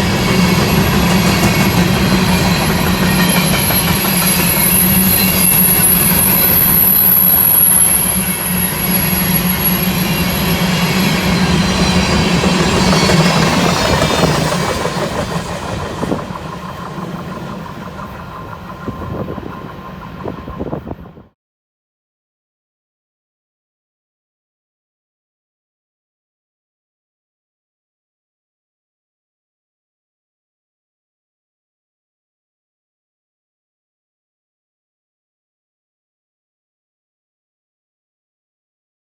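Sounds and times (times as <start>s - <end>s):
high-pitched wheel squeal: 0.0s - 14.8s
train wheels rumbling on rails: 0.0s - 21.4s.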